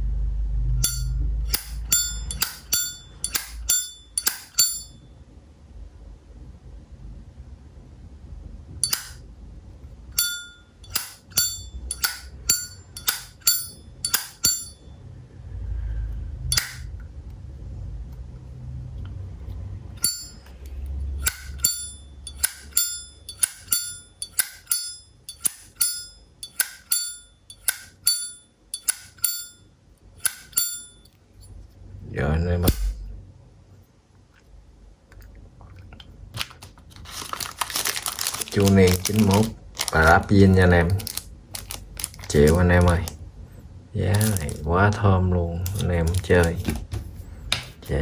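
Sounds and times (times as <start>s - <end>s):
lighter lid clacking: 8.8s - 9.2s.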